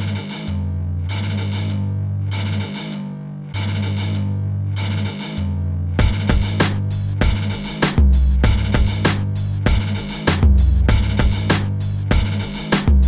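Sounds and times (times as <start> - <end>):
bass line: 0.0 - 13.0
drum hits: 6.0 - 13.0.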